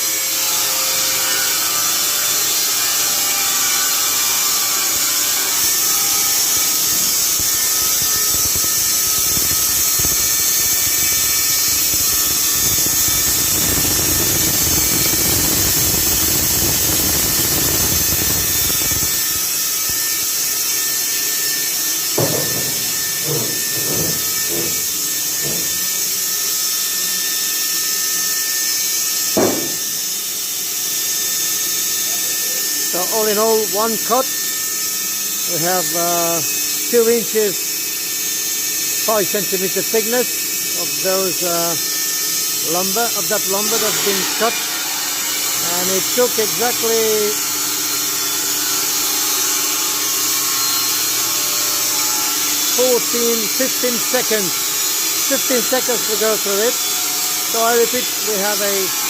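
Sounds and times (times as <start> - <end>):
saw blade cutting through log: 5.5 - 27.0, 29.1 - 30.4, 41.0 - 47.7, 50.0 - 59.0
band sawmill whining: 8.5 - 26.9, 29.2 - 30.4, 42.6 - 47.4, 51.4 - 59.0
short knocks: 22.2 - 26.0, 29.4 - 30.0.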